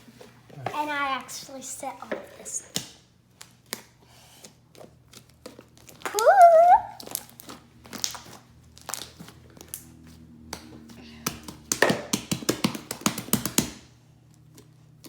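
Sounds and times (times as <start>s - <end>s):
high wavering vocal sound: 6.1s - 7.0s.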